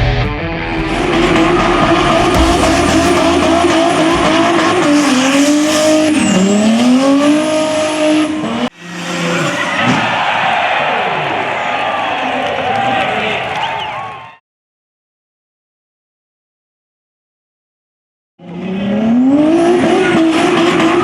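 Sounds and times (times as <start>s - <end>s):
engine at high revs: 0.8s - 9.8s, 18.4s - 21.0s.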